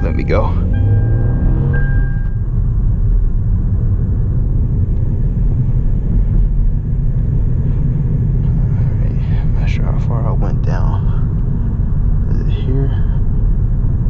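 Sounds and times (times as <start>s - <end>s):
car engine and tyre rumble: 0.0s - 14.0s.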